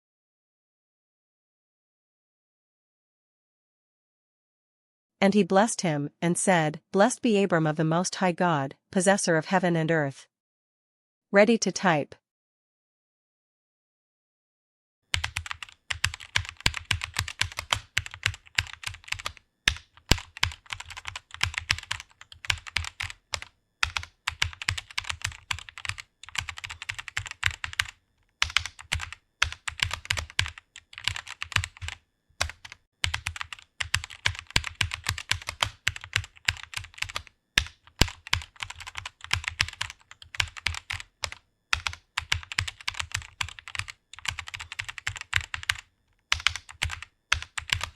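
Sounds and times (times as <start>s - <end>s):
computer keyboard typing: 15.1s - 47.9s.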